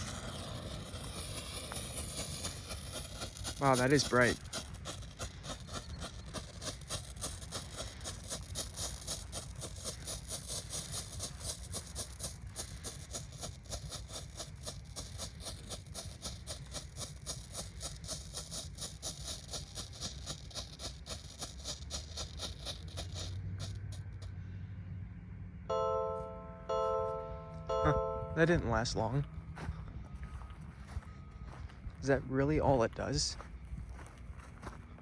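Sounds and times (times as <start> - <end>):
strobe firework popping: 0.0 - 24.3.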